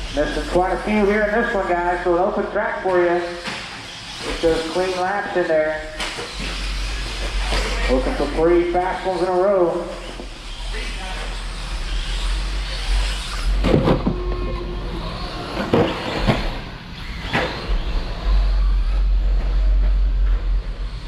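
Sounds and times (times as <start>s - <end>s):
rc truck motors whining past: 0.0s - 21.0s
steady low hum: 0.0s - 21.0s.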